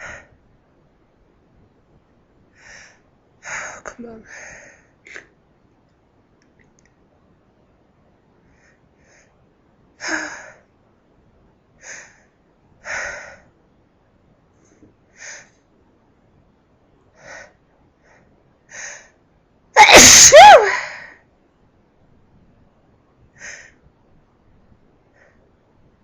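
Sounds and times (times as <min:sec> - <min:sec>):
loud sneeze: 0:19.8 - 0:20.8.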